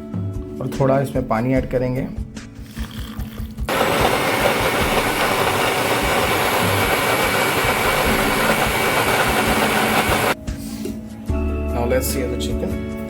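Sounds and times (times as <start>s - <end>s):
mixer grinder running: 3.7s - 10.4s.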